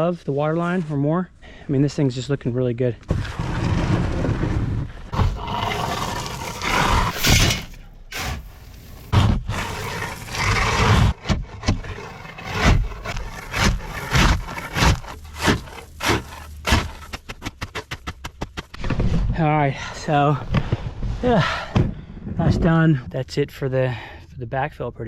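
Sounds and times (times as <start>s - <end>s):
gravel scraping and crunching: 2.3s - 21.4s.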